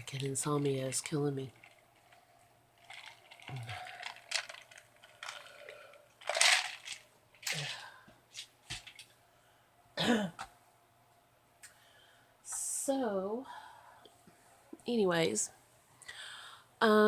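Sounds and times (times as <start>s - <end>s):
woman clearing her throat: 10.0s - 10.4s
woman coughing: 10.0s - 10.4s.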